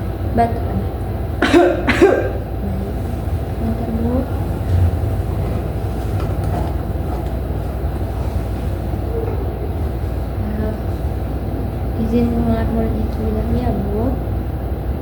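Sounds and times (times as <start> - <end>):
low rumbling background noise: 0.0 - 15.0
faint voice: 2.3 - 14.3.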